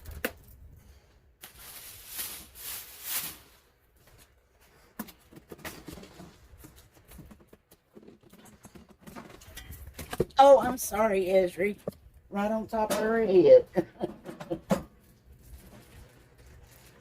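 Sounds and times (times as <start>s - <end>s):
packaging rustling: 15.4s - 17.0s.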